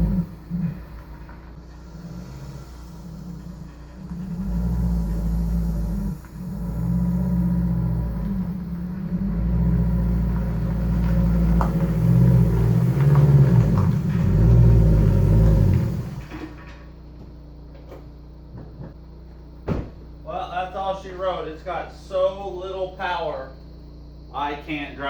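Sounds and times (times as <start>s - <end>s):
car engine revving unevenly: 0.0s - 18.6s.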